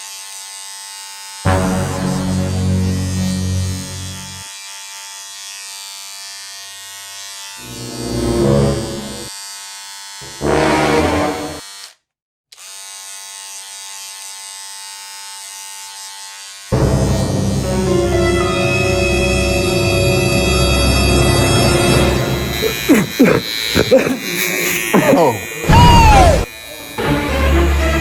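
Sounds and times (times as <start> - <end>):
electric hair trimmer buzzing: 0.0 - 28.0
loud music: 1.5 - 3.6, 7.6 - 9.3, 10.2 - 11.6, 16.8 - 22.6.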